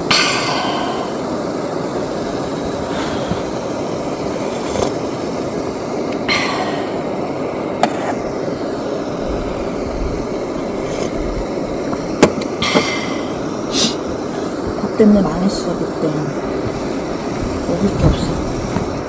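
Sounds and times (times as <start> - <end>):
rain on a tent: 7.7 - 19.0.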